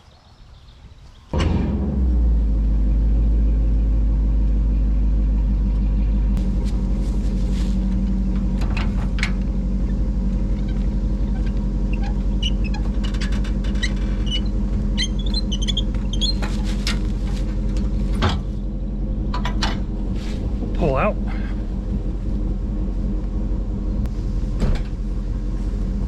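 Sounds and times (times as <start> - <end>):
engine idling: 1.4 - 26.0
small clicks and high squeaks: 9.8 - 16.6.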